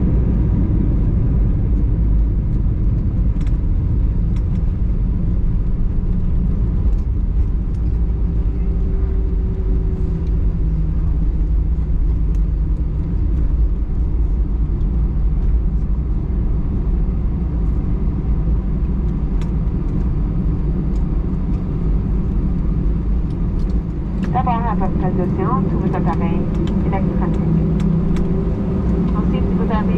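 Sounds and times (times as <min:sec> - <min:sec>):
aircraft cabin engine rumble: 0:00.0 - 0:29.9
faint steady hum: 0:18.8 - 0:29.9.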